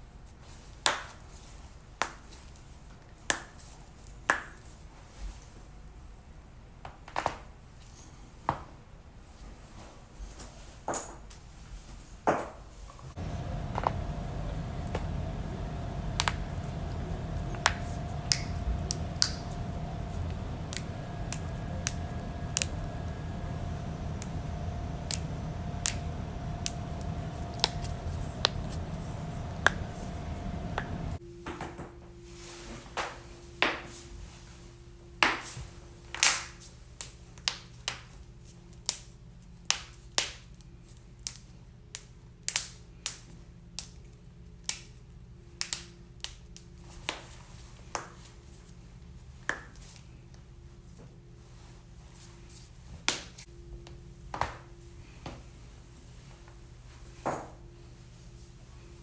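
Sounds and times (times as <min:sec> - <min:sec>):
steady background hum: 0:00.0 - 0:59.0.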